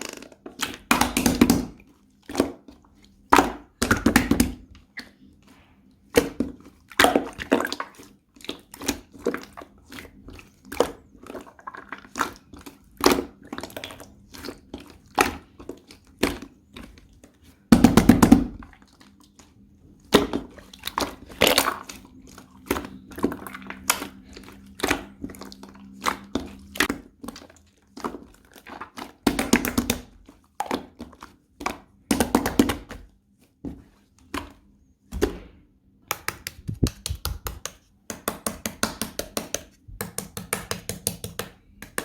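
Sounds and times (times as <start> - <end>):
hands squishing slime: 0.0 - 42.0.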